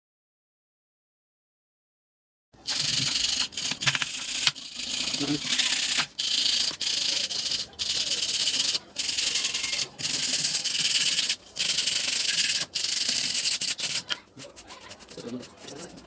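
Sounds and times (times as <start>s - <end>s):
rough rubbing strokes: 4.9s - 16.0s.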